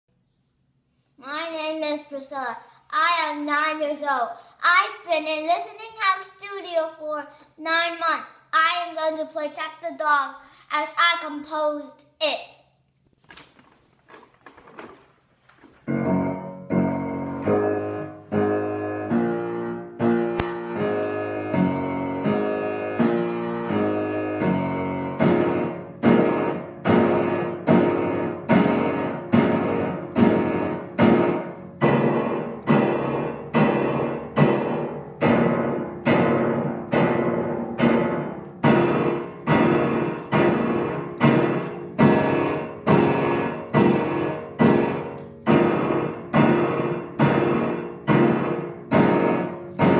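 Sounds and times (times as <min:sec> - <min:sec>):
solo piano: 0:15.6 - 0:49.9.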